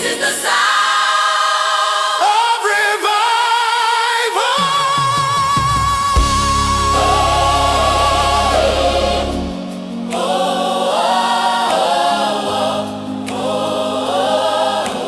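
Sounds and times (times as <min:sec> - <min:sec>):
choir singing wordless chords: 0:00.0 - 0:15.0
keyboard: 0:00.0 - 0:15.0
bass: 0:06.1 - 0:09.8.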